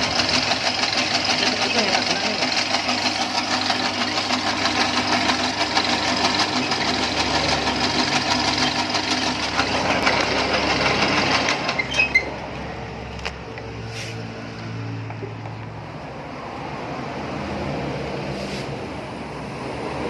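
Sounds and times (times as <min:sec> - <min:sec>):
noodle machine rattling: 0:00.0 - 0:12.4
machine squeak: 0:06.2 - 0:07.2, 0:08.3 - 0:10.2, 0:11.0 - 0:12.5.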